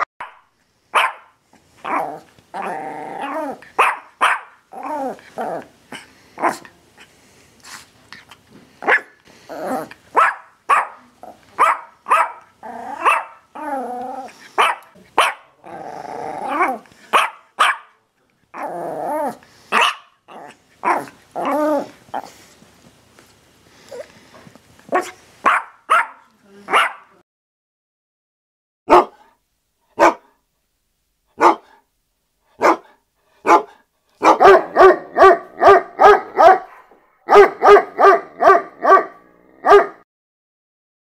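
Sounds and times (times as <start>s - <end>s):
dog barking: 0.0s - 2.0s, 3.8s - 4.6s, 6.4s - 6.6s, 8.8s - 9.2s, 10.1s - 13.4s, 14.6s - 15.6s, 16.6s - 18.0s, 19.7s - 20.2s, 24.9s - 27.2s, 28.9s - 29.3s, 30.0s - 30.4s, 31.4s - 31.8s, 32.6s - 40.0s.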